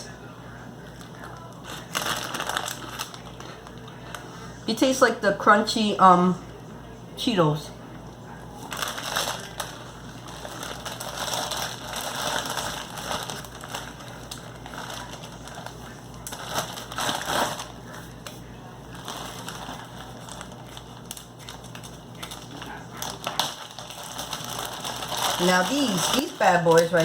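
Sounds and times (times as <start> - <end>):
crunchy snack being chewed: 1.0 - 4.0.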